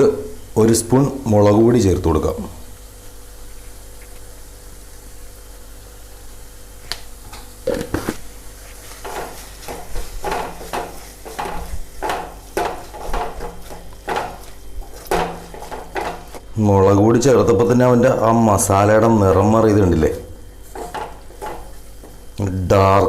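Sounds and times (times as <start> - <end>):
spoon scraping frying pan: 8.1 - 16.4, 20.6 - 22.3.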